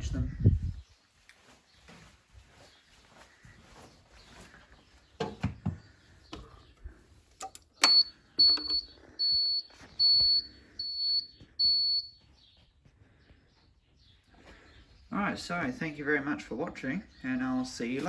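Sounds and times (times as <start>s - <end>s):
knocks and clicks: 7.4s - 8.8s
fire alarm pulsing beep: 7.8s - 12.3s.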